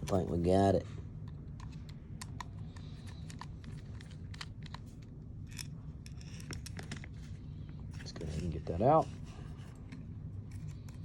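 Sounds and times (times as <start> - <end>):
steady low hum: 0.0 - 11.0
small parts and tools clicking: 1.6 - 7.1.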